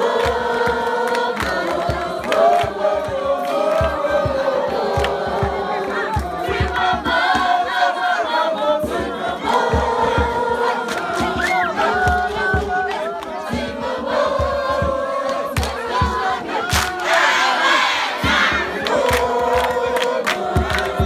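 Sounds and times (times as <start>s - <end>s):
young voices singing together: 0.0s - 21.0s
low thumps of stamping: 8.8s - 21.0s.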